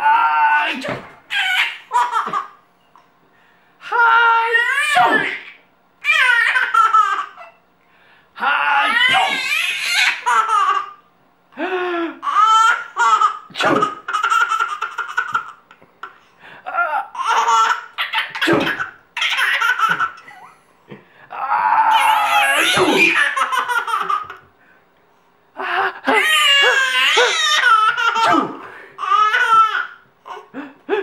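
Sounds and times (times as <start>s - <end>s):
baby laughing: 0.8s - 2.6s, 4.5s - 7.6s, 8.8s - 11.0s, 12.2s - 20.6s, 21.9s - 24.4s, 25.7s - 31.0s
man fake sneezing: 5.0s - 5.5s, 13.5s - 14.0s, 22.5s - 23.2s, 28.2s - 28.7s.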